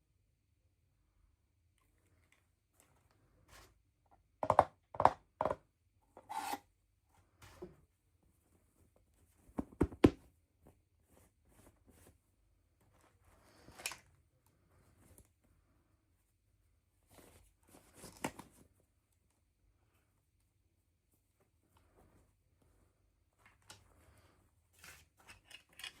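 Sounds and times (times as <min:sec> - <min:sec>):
knocks and rustles of packaging: 0:09.4 - 0:10.3.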